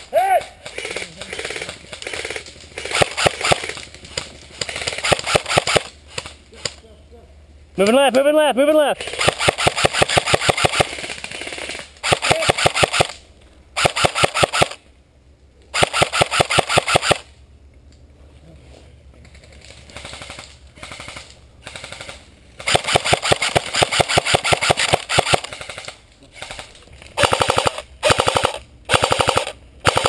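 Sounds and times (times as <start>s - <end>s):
airsoft guns firing bursts: 0.5s - 6.7s, 9.0s - 13.2s, 13.8s - 14.8s, 15.7s - 17.3s, 19.9s - 30.0s.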